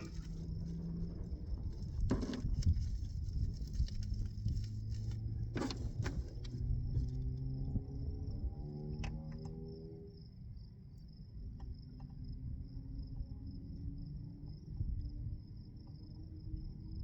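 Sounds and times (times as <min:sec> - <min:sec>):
steady low rumble: 0:00.0 - 0:08.6.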